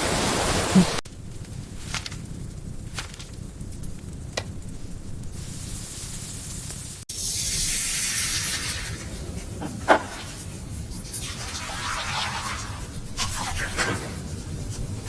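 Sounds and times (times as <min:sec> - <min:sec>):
food sizzling in a pot: 0:03.2 - 0:14.7.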